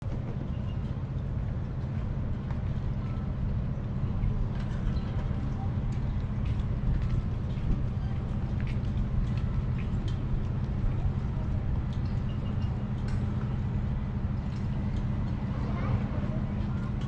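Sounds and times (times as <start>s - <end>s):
faint distant voices: 14.7s - 17.0s.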